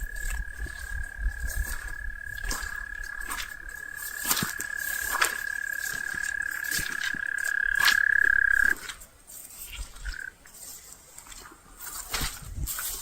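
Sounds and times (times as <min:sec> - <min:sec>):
high-pitched insect drone: 0:00.0 - 0:08.8.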